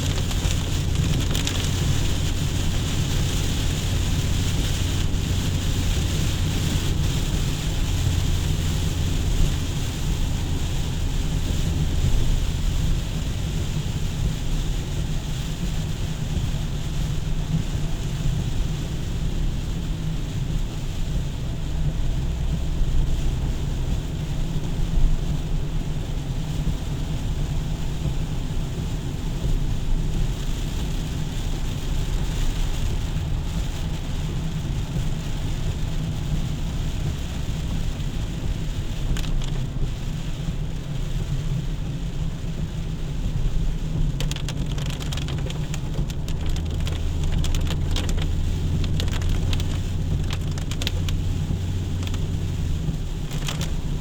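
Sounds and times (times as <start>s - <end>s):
low rumble: 0.0s - 54.0s
steady rain hiss: 0.0s - 54.0s.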